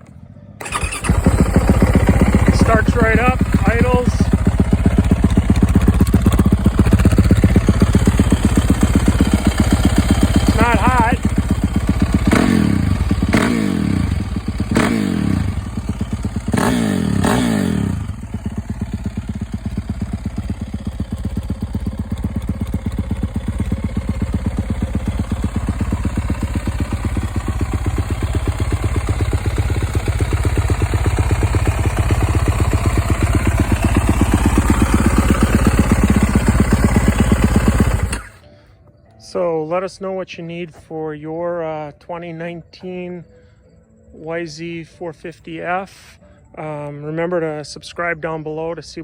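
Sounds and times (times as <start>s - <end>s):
motorcycle engine revving and idling: 0.6s - 38.5s.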